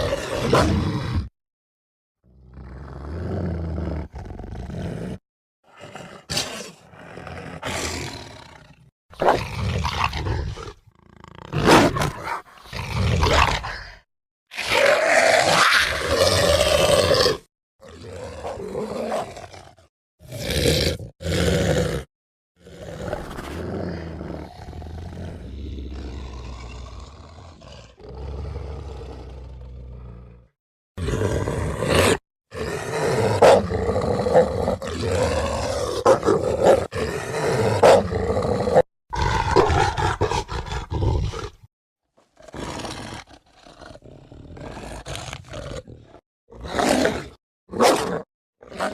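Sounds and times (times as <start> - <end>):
werewolf roars: 0.0 - 1.3, 12.7 - 41.6
werewolf snarling growls: 0.0 - 1.3, 2.3 - 41.7, 42.3 - 48.9.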